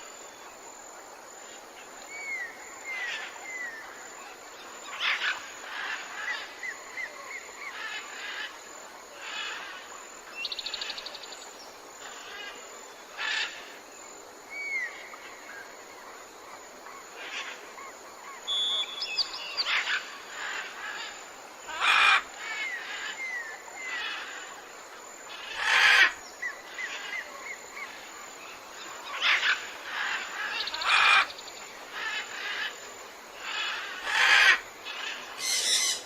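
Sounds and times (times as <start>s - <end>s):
background hiss: 0.0s - 36.0s
bird whistles: 18.5s - 19.2s
bird trill: 18.5s - 19.7s, 35.4s - 36.0s
harsh bird chirps: 35.4s - 36.0s.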